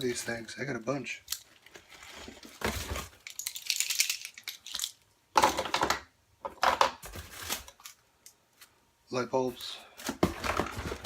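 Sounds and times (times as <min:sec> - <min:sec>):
rustling of packaged items: 0:00.0 - 0:05.0, 0:07.0 - 0:08.7, 0:09.4 - 0:11.0.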